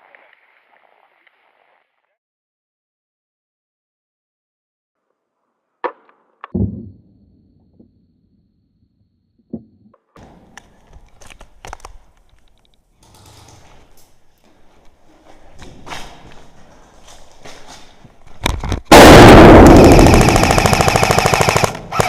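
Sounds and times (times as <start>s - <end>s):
rustling with clicks: 10.2s - 18.9s.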